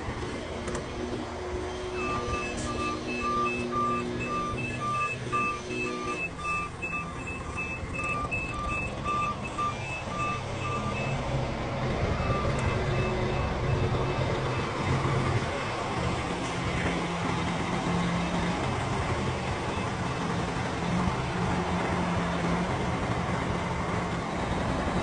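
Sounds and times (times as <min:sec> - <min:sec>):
diesel engine running: 0:00.0 - 0:25.0
reverse alarm beeping: 0:01.9 - 0:11.2, 0:12.2 - 0:15.4.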